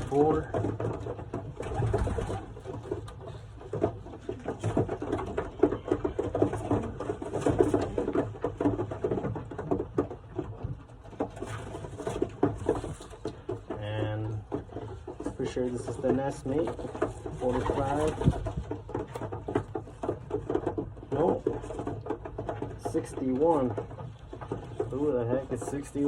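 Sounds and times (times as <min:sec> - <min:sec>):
pigeons cooing: 0:00.0 - 0:08.8, 0:16.4 - 0:19.2
rustling: 0:00.0 - 0:26.0
wing flutters and taps: 0:00.0 - 0:26.0.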